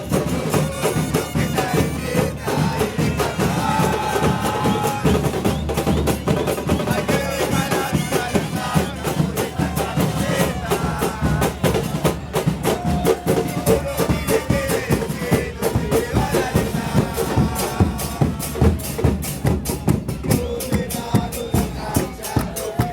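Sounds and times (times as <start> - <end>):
held horn-like tones: 0.0 - 5.2
bass drums beating: 0.0 - 22.9.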